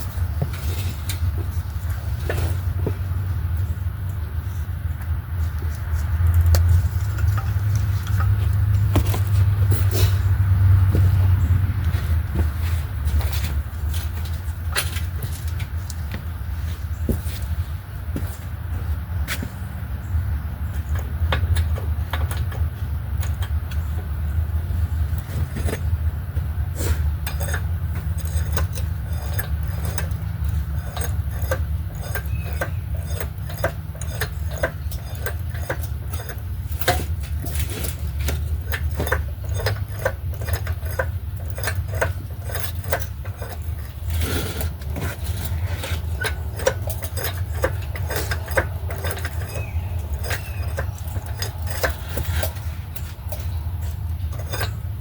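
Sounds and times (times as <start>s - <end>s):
steady low hum: 0.0s - 55.0s
metal tools clinking: 26.5s - 55.0s.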